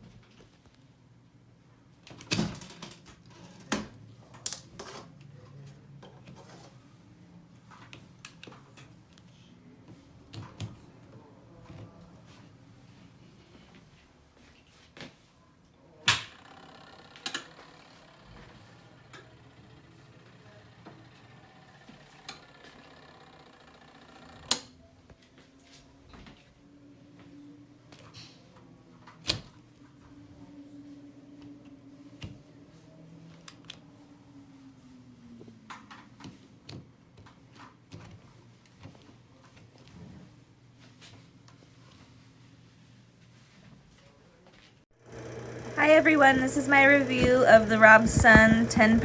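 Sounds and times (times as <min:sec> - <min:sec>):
low room hum: 0:05.2 - 0:35.8, 0:45.0 - 0:49.0
low steady hum: 0:45.0 - 0:49.0.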